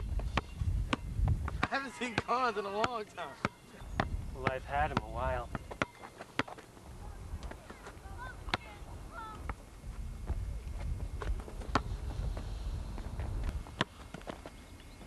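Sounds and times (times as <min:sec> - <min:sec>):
ball bouncing on hard court: 0:00.2 - 0:06.6.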